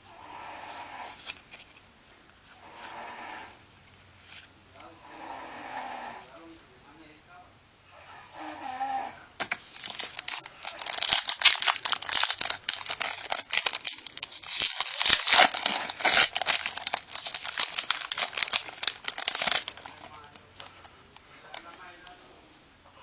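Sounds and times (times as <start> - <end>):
foil wrapper crinkling and tearing: 9.7 - 20.7.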